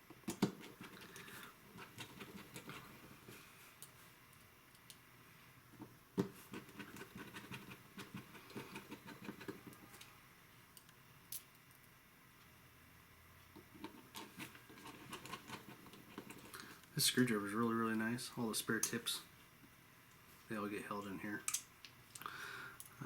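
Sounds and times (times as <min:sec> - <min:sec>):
small tools clicking and tapping: 0:21.4 - 0:23.0.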